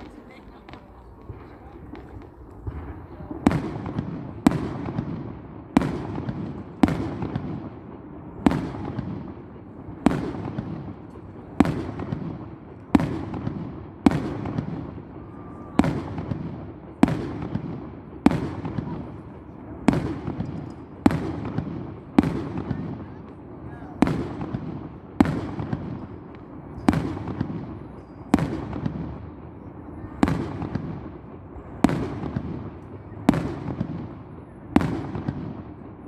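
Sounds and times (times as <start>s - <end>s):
firework shells bursting: 0.0s - 3.7s.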